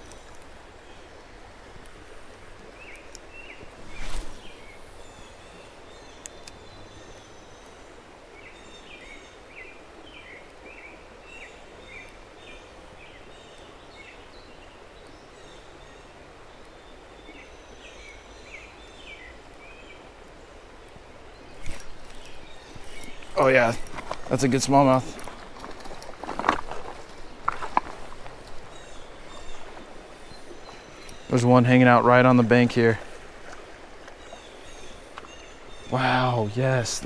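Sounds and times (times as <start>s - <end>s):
birds chirping: 0.0s - 9.4s, 21.1s - 37.0s
steady outdoor hiss: 0.0s - 37.0s.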